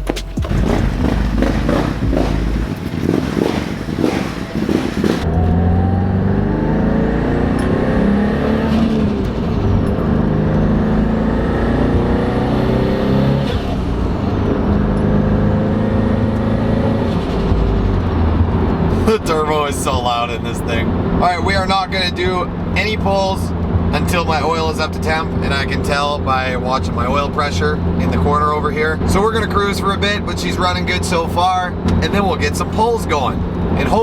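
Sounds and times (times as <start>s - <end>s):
engine clattering: 0.0s - 12.6s, 13.2s - 34.0s
car engine revving through gears: 0.0s - 34.0s
high turbo whistle: 0.1s - 6.2s.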